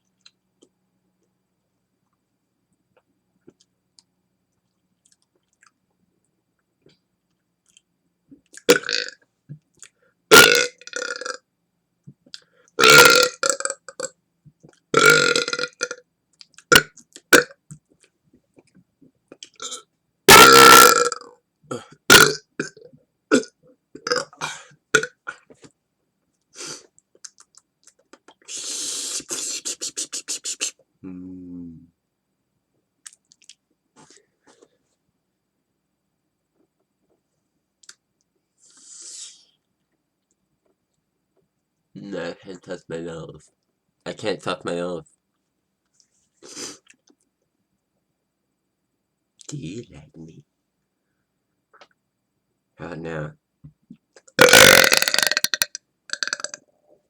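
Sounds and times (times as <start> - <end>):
loud burps: 8.6 - 9.2, 10.3 - 11.4, 12.8 - 14.1, 15.0 - 16.0, 16.7 - 17.6, 19.5 - 25.4, 54.4 - 56.6.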